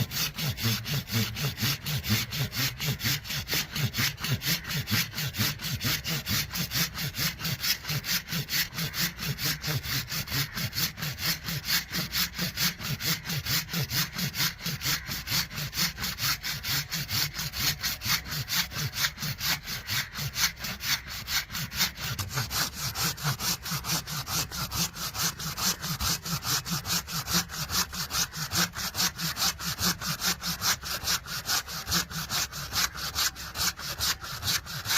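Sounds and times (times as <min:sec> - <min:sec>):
hand saw cutting wood: 0:00.0 - 0:34.9.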